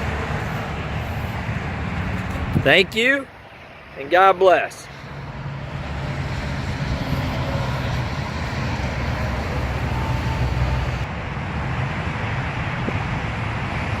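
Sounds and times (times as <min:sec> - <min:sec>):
bulldozer diesel engine idling: 0:05.0 - 0:11.1.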